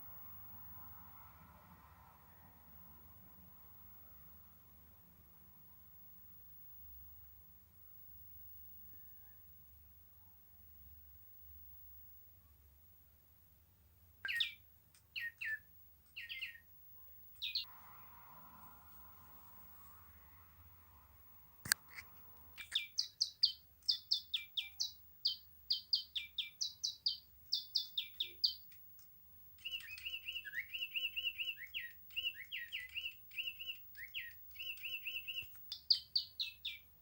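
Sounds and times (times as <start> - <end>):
bird chirping: 13.7 - 37.0.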